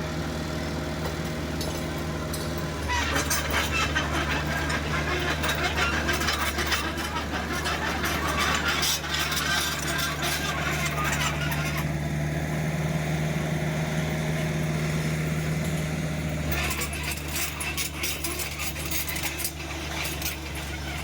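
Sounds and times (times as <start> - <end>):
excavator diesel engine running: 0.0 - 21.0
rapid clattering and scraping: 1.6 - 11.9, 16.4 - 21.0.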